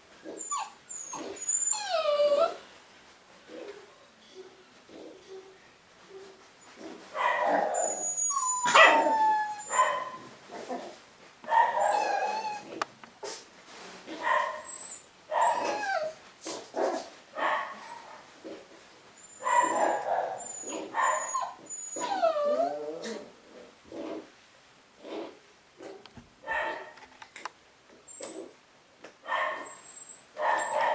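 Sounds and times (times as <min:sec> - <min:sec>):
puppies whimpering and yipping: 0:00.3 - 0:02.6, 0:07.8 - 0:09.8, 0:11.8 - 0:12.8, 0:14.6 - 0:16.2, 0:19.2 - 0:23.3, 0:29.6 - 0:30.9.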